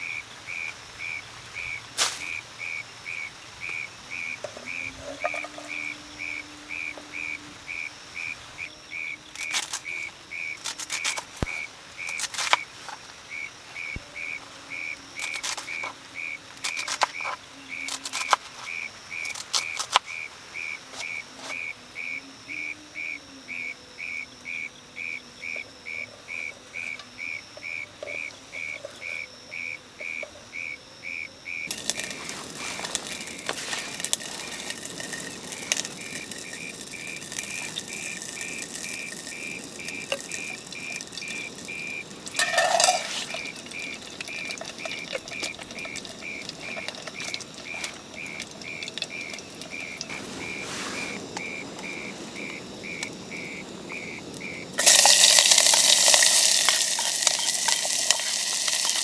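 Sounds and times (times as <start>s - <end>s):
loud hiss: 31.7s - 59.0s.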